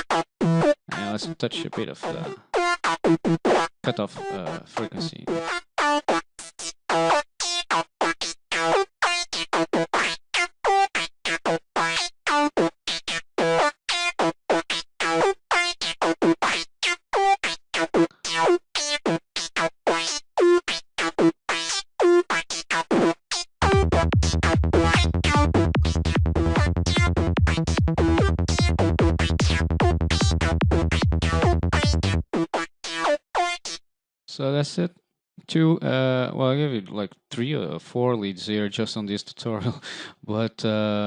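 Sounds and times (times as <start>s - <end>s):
staccato synth lead riff: 0.0s - 6.0s, 23.6s - 32.5s
heavy synth bass: 23.6s - 32.2s.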